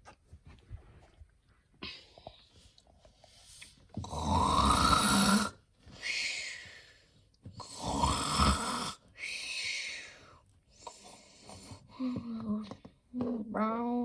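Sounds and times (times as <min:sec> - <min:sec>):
loud rumbling snores: 0:04.0 - 0:05.6, 0:07.6 - 0:09.0.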